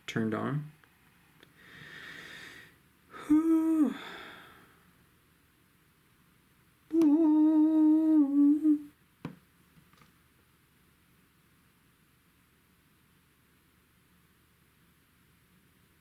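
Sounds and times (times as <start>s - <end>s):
man humming: 3.1s - 4.6s, 6.9s - 9.0s.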